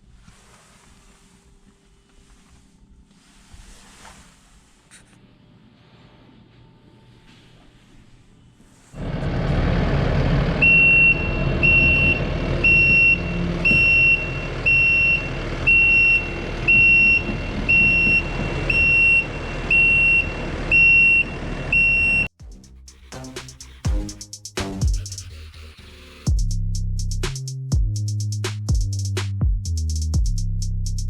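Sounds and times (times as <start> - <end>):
diesel engine running loudly: 9.0 - 22.3
backup alarm beeping: 10.6 - 22.3.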